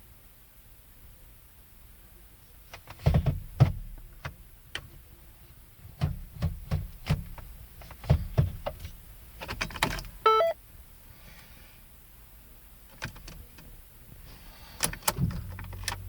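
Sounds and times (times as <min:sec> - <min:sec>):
car controls clicking and knocking: 0:06.0 - 0:10.5
short electronic chime: 0:10.3 - 0:10.6.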